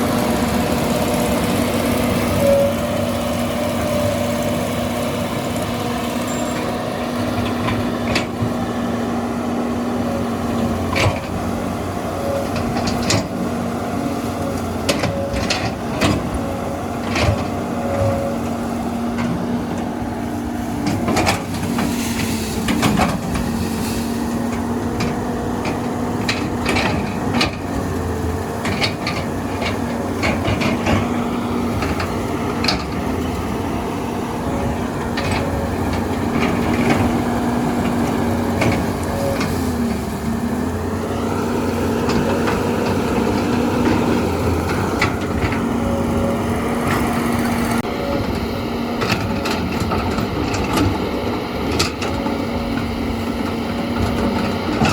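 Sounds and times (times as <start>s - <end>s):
diesel engine running: 0.0s - 54.9s.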